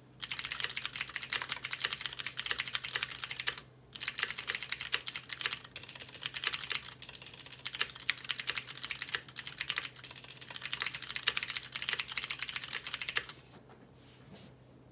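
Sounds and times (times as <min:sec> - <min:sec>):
clicky mechanical keyboard typing: 0:00.2 - 0:13.4.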